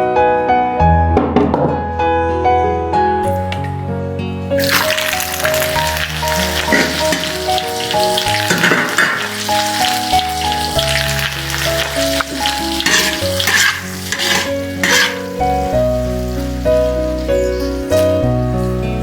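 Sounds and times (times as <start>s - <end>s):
background music with melody: 0.0s - 19.0s
food sizzling in hot oil: 4.6s - 19.0s.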